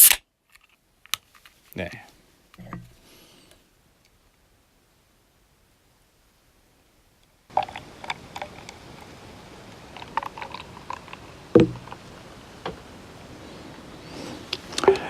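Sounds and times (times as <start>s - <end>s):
beer container and glass handled: 10.0s - 12.0s
object set down thump: 11.6s - 11.8s.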